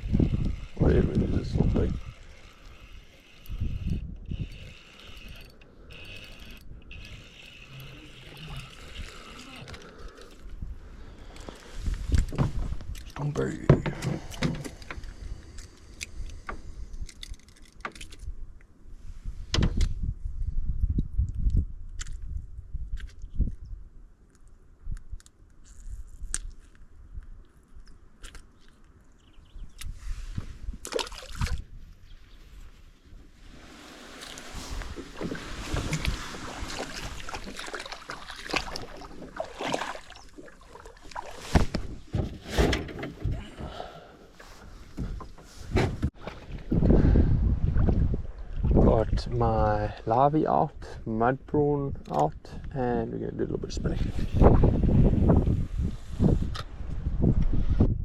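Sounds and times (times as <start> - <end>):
wind buffeting microphone: 0.0 - 5.4, 18.2 - 23.9, 34.4 - 39.5, 44.8 - 50.0, 51.8 - 58.0.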